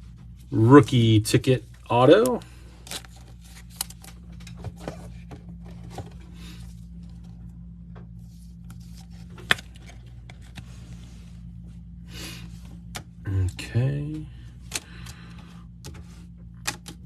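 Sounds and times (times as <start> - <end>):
steady electrical hum: 0.0 - 17.0
cards and wrappers rustling: 1.6 - 7.4, 8.2 - 11.5.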